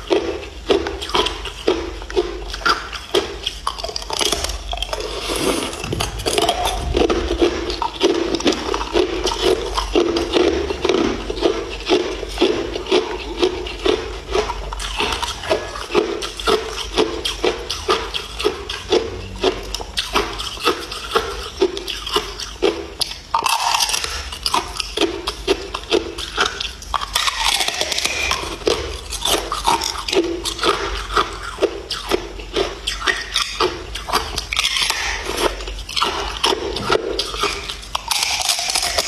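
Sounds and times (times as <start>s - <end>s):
ice being chewed: 0.0s - 39.0s.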